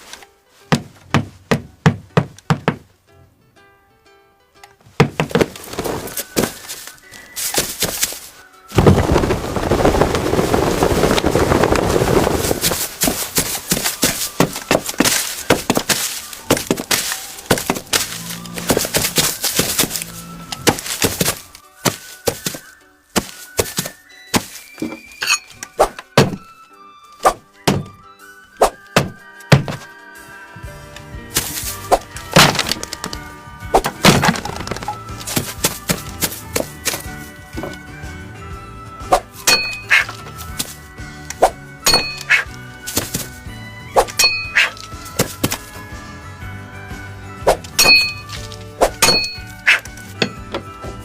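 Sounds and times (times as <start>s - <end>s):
sharp knocks and cracks: 5.0s - 9.4s, 12.4s - 26.5s, 27.2s - 28.0s, 28.6s - 29.9s, 31.4s - 37.9s, 39.2s - 43.4s, 44.0s - 45.7s
music with held tones: 5.6s - 51.0s.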